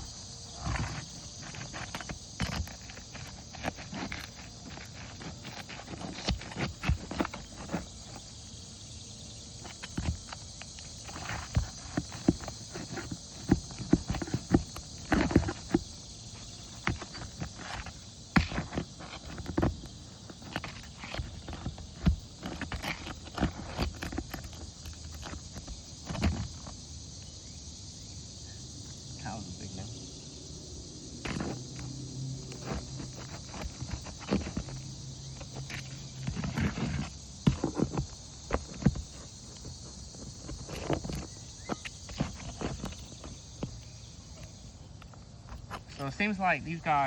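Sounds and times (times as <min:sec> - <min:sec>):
steady high hiss: 0:00.0 - 0:05.9, 0:24.6 - 0:47.0
insects chirring: 0:00.0 - 0:47.0.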